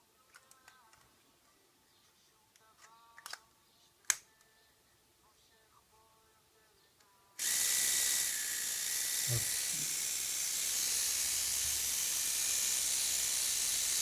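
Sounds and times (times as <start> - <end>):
hair trimmer buzzing: 7.4 - 14.0.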